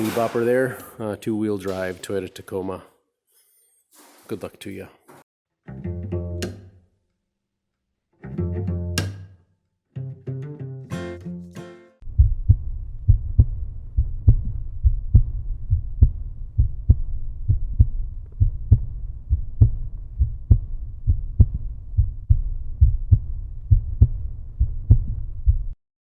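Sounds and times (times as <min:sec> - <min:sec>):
pulsing bass beat: 0:12.0 - 0:25.8.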